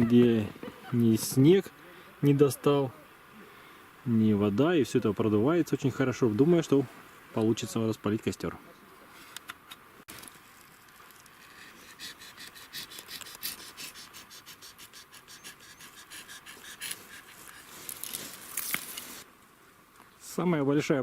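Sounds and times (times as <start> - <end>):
twigs and bark snapping: 16.8 - 19.2.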